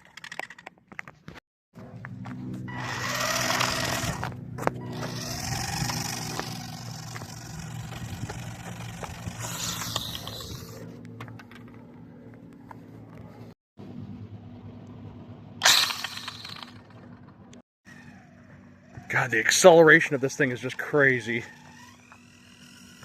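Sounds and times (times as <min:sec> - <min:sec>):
steady low hum: 0:01.8 - 0:23.0
electric motors whining: 0:02.0 - 0:12.6, 0:17.9 - 0:23.0.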